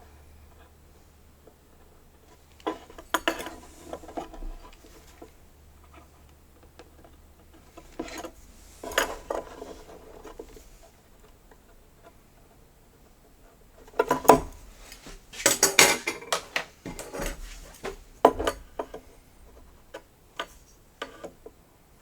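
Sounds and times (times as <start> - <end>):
wooden pieces clattering on workbench: 15.4 - 19.0.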